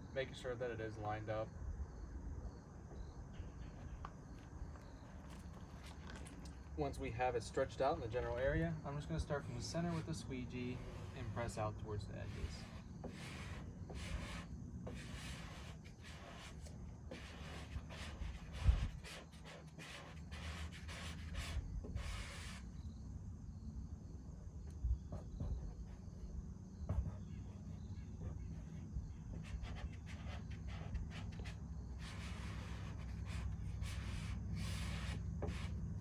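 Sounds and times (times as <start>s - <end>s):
steady low hum: 0.0s - 36.0s
squeegee scraping strokes: 8.1s - 22.8s, 26.9s - 35.8s.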